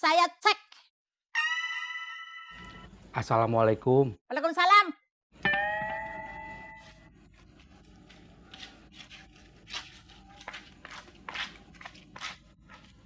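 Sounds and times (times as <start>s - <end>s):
ringing chime: 1.4s - 3.0s, 5.4s - 7.1s
faint scuffs and rustles: 6.8s - 13.0s.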